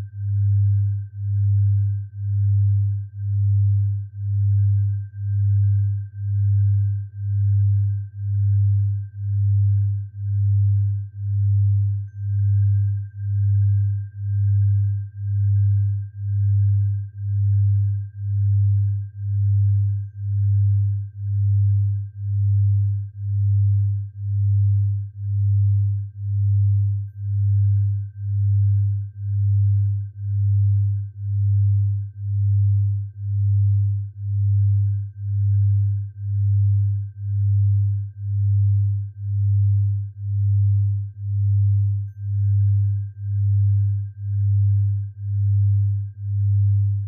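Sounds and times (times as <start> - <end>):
deep pulsing synthesized hum: 0.0 - 47.0
faint steady high tone: 0.0 - 47.0.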